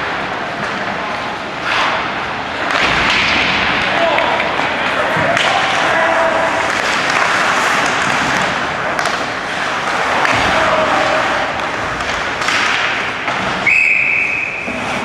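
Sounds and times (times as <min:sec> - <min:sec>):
puck and sticks hitting boards: 0:00.0 - 0:15.0
skates scraping on ice: 0:00.0 - 0:15.0
referee's whistle blast: 0:13.6 - 0:14.6.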